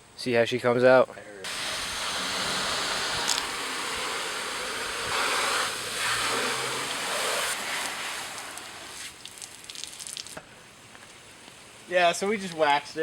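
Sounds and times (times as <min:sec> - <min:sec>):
water spraying onto car body: 0:01.5 - 0:10.4
faint scattered ticks: 0:07.8 - 0:12.7.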